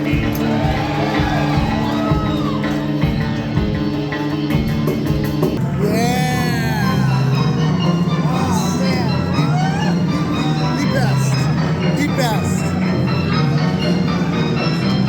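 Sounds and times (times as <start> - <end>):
live rock band playing: 0.0 - 5.6
low bass: 0.0 - 12.0.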